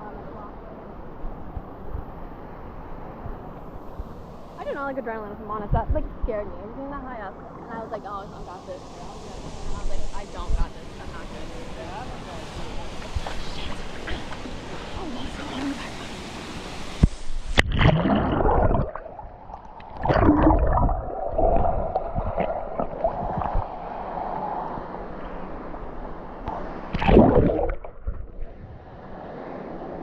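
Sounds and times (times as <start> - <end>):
muffled underwater gurgling: 17.6 - 23.9, 27.0 - 28.6
surges of bubbles: 17.6 - 24.7, 26.9 - 28.8.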